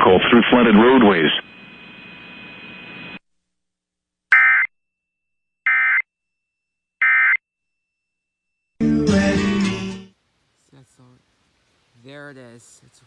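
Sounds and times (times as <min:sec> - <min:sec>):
faint radio hiss: 0:00.0 - 0:03.2, 0:10.0 - 0:13.0.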